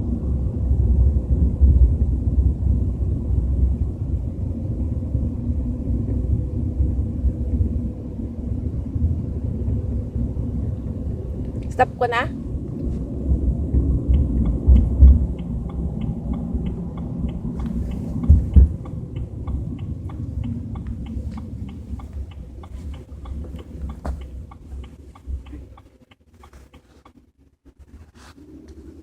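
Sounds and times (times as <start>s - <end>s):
car engine rumble: 0.0s - 29.0s
turn signal clicking: 13.7s - 27.2s.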